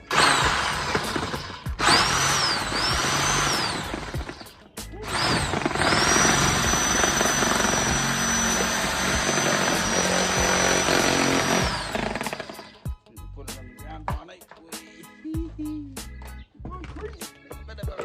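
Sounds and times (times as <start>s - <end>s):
angle grinder cutting: 0.0s - 12.8s.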